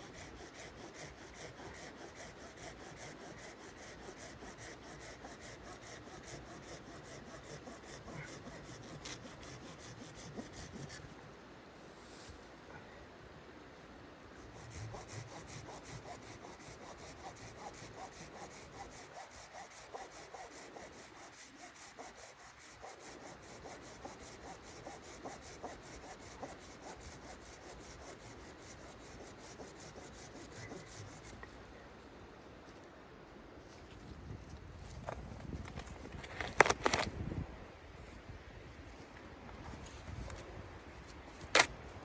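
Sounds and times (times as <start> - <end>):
hand saw cutting wood: 0.0 - 11.0, 14.6 - 31.4.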